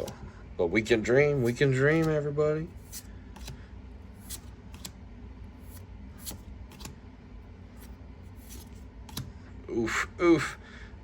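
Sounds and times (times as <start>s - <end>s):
low steady hum: 0.0s - 11.0s
cards clicking and rustling: 1.3s - 3.6s, 4.2s - 5.0s, 5.6s - 7.0s, 7.8s - 9.3s.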